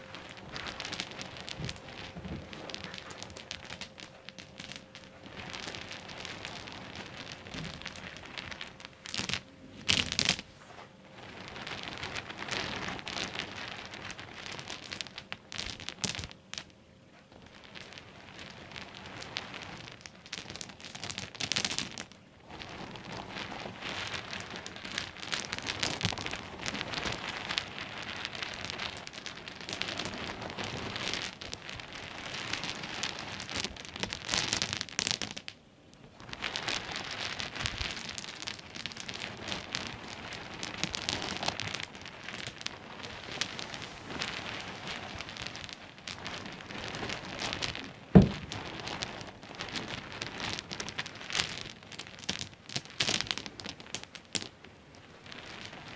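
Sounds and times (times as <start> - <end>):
pebbles clicking and rattling: 0.0 - 10.4, 11.2 - 16.8, 17.4 - 55.9
loud knock: 48.2 - 48.5.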